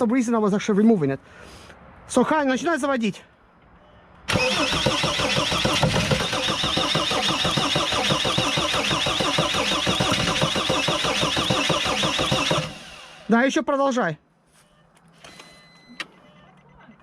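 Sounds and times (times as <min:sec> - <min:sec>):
high starter whine: 0:04.3 - 0:13.3
diesel engine cranking: 0:04.3 - 0:13.4.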